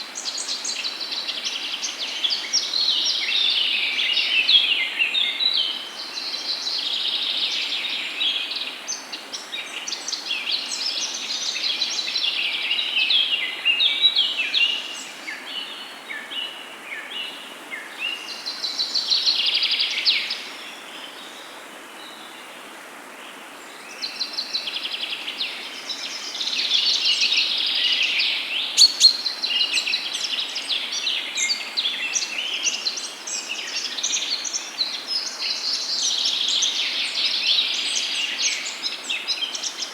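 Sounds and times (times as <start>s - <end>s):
outdoor hiss: 0.0s - 39.9s
small birds chirping: 23.9s - 39.9s.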